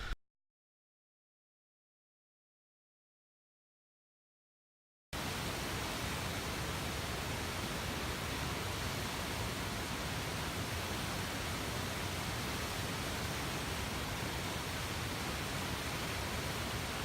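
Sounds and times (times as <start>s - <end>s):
waterfall roaring: 5.2s - 17.0s.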